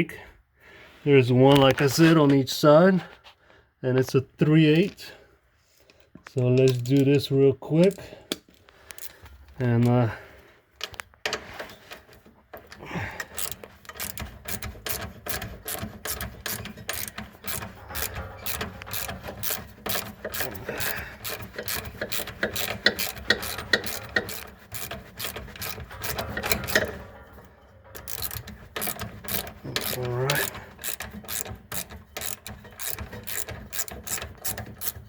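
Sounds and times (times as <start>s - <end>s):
socket ratchet clicking: 13.2s - 27.2s, 28.0s - 35.0s.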